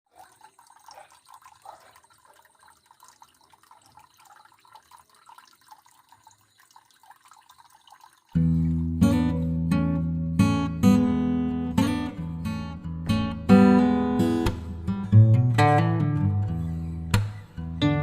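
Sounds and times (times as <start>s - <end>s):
water trickling and dripping: 0.0s - 9.7s
acoustic guitar music: 8.4s - 18.0s.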